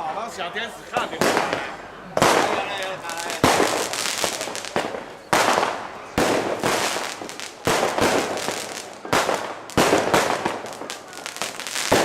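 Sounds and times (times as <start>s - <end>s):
fireworks bangs: 0.9s - 12.0s
fireworks crackling: 0.9s - 12.0s.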